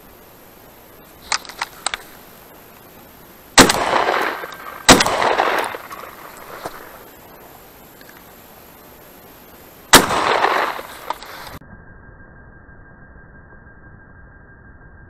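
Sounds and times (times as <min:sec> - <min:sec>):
shotgun shots with echo: 0:03.6 - 0:06.9, 0:09.9 - 0:11.4.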